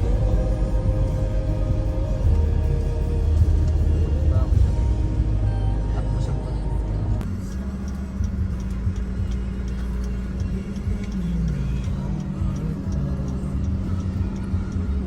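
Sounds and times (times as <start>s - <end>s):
wavering tone: 0.0s - 8.1s
faint music: 0.0s - 15.0s
road vehicle rumbling: 0.0s - 15.0s.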